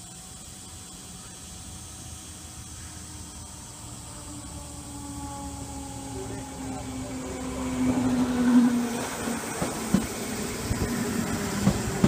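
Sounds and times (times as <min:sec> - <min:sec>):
train motor whine: 0:00.0 - 0:12.0
wheels clunking: 0:05.8 - 0:12.0.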